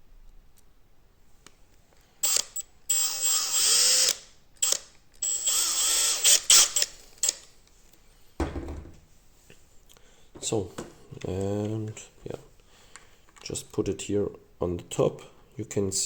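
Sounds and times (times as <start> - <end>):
electric screwdriver whine: 2.2 - 7.4.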